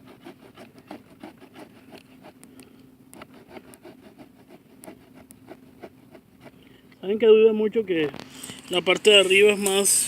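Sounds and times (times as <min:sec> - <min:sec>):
saw rasping through wood: 0:00.0 - 0:02.4, 0:03.2 - 0:06.2.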